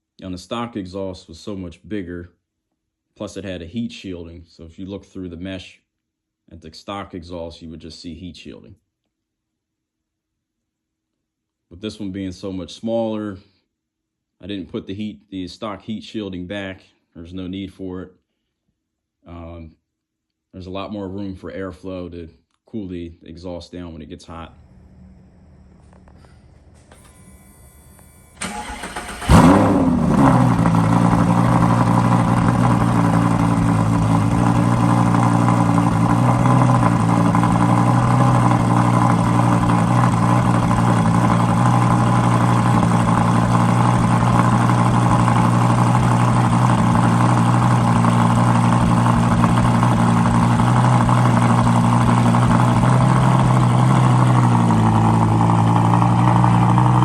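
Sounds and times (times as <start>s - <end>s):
car engine starting and idling: 24.4s - 57.0s.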